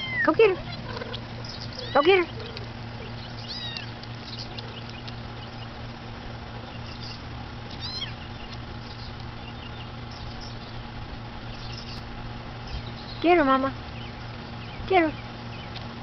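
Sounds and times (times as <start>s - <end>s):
kitten mewing: 0.0s - 1.1s, 1.8s - 2.6s, 3.5s - 3.9s, 7.8s - 8.2s
steady low hum: 0.0s - 16.0s.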